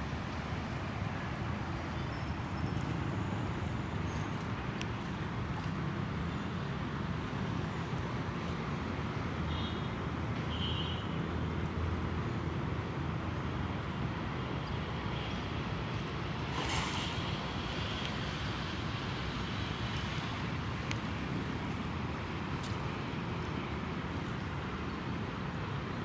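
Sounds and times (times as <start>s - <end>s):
short rush of noise: 16.5s - 17.5s.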